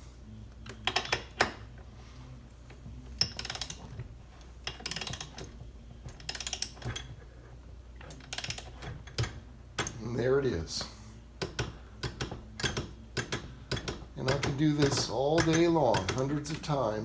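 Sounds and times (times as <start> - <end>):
ratcheting wrench clicking: 0.7 - 1.6, 3.2 - 4.0, 4.6 - 7.1, 8.0 - 10.0, 11.4 - 16.8.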